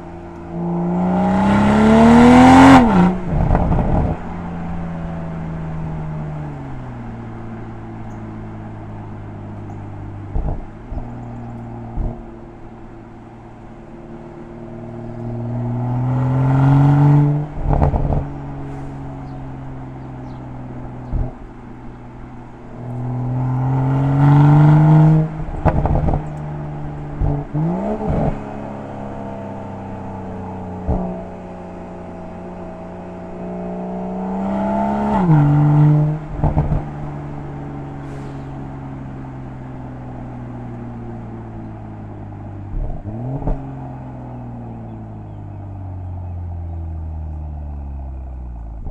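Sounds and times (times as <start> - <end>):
car engine revving: 0.0 - 48.9
exhaust crackles and pops: 2.7 - 4.3, 9.5 - 13.9, 17.5 - 23.4, 25.1 - 28.6, 30.2 - 31.5, 36.0 - 39.4, 40.0 - 45.2, 47.3 - 48.9.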